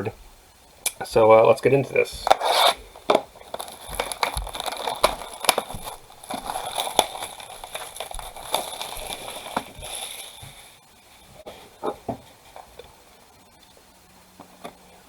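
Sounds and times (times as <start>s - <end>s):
plastic wrapping crinkling: 2.0s - 12.9s.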